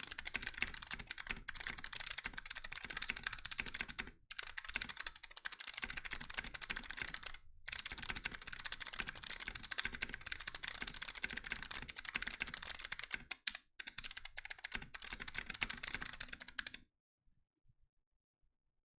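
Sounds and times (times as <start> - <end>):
fast typing on clicky keyboard: 0.0 - 16.8.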